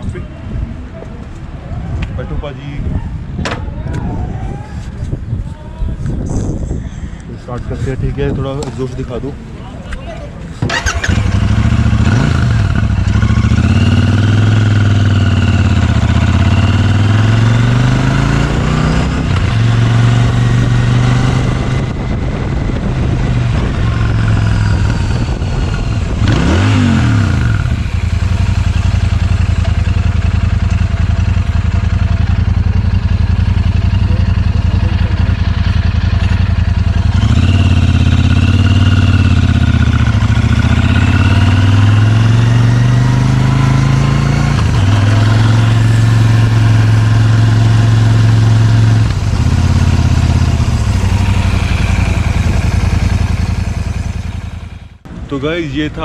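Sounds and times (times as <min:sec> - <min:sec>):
motorcycle engine while riding: 0:10.6 - 0:55.3.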